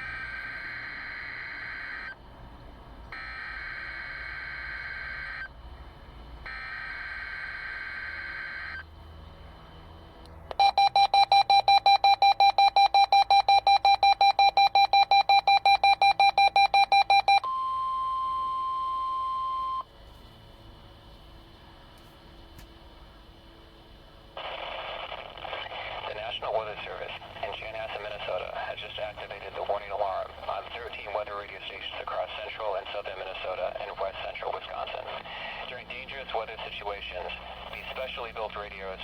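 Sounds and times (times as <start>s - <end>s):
steady warning alarm tone: 0.0s - 2.3s, 3.1s - 5.7s, 6.4s - 8.9s, 10.6s - 19.8s
rapid beeping: 24.4s - 39.0s.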